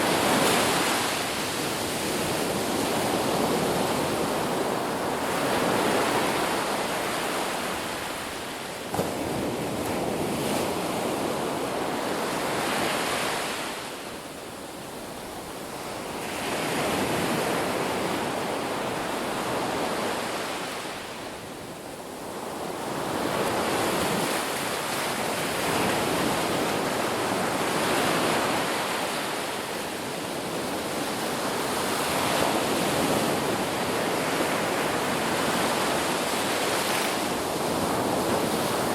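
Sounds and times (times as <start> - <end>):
ocean waves breaking on beach: 0.0 - 38.9.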